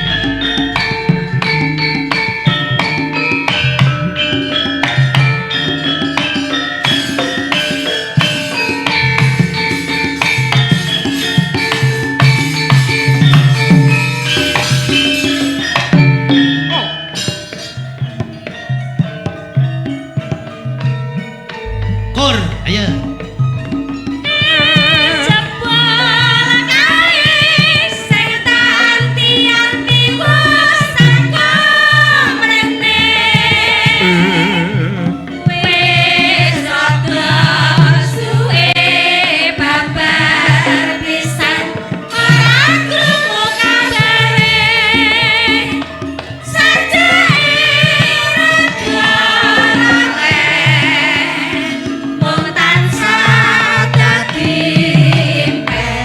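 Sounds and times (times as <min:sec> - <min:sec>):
gamelan accompaniment: 0:00.0 - 0:56.0
hand drum beats: 0:00.0 - 0:56.0
person singing with vibrato: 0:21.6 - 0:39.0, 0:46.6 - 0:56.0.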